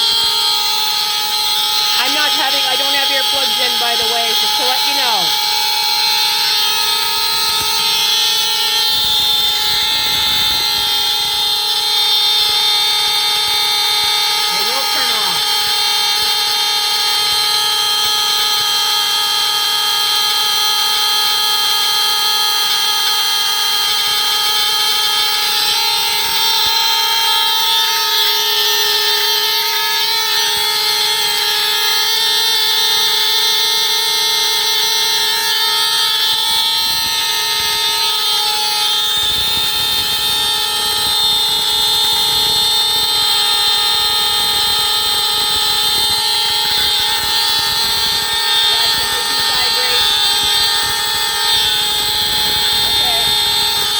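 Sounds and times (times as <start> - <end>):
alarm horns sounding steady tone: 0.0 - 53.9.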